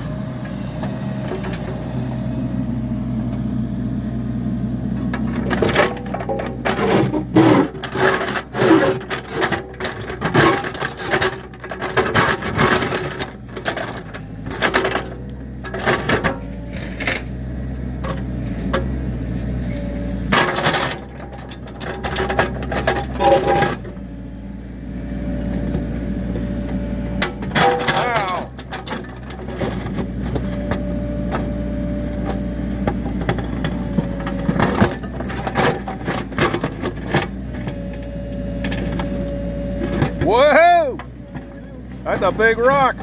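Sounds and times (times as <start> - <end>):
excavator engine running: 0.0 - 43.0
bucket scraping on rock: 5.1 - 17.0.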